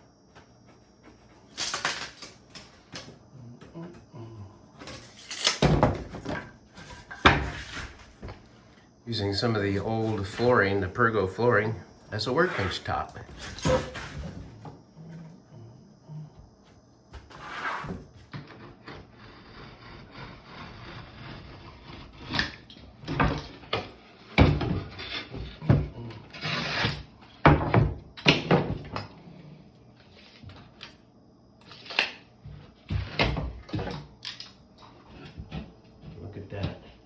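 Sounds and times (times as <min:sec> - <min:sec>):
scraping on wooden workbench: 0:04.8 - 0:08.7, 0:11.5 - 0:14.8, 0:17.2 - 0:29.0.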